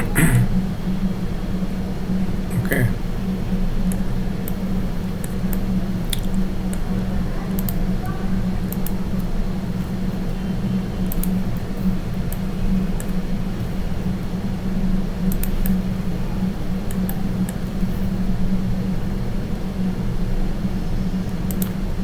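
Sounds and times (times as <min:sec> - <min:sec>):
steady low hum: 0:00.0 - 0:06.7.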